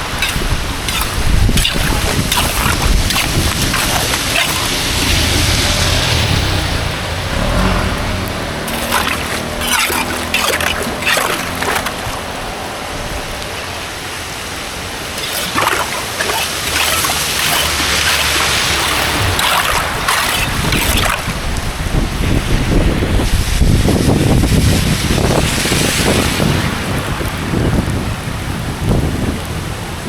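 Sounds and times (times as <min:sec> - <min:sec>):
sharp knocks and scrapes: 0:00.0 - 0:06.2, 0:08.6 - 0:12.1, 0:15.2 - 0:21.4
water splashing and flowing: 0:00.0 - 0:28.1.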